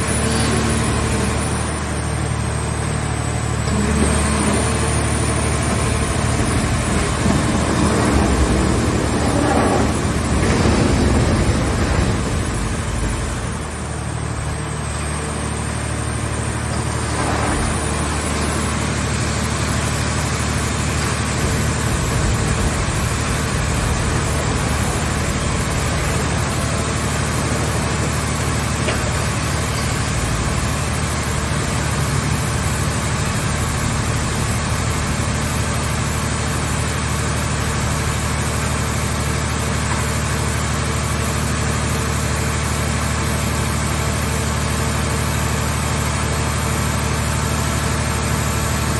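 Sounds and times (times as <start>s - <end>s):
hydraulic baler droning: 0.0s - 48.9s.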